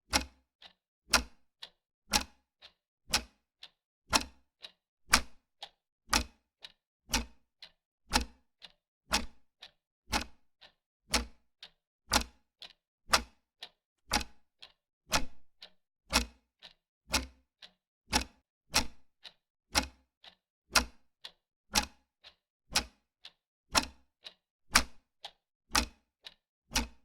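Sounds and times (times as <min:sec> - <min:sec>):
clock ticking: 0:00.1 - 0:04.4, 0:05.1 - 0:05.4, 0:07.1 - 0:17.3, 0:18.1 - 0:19.0, 0:21.8 - 0:23.0, 0:23.8 - 0:27.0.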